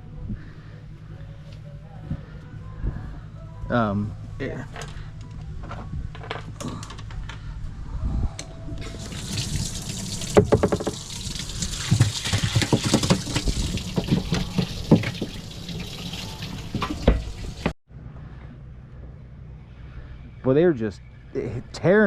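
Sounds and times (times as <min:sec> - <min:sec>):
steady low hum: 0:00.0 - 0:10.4
water running and splashing: 0:08.8 - 0:17.8.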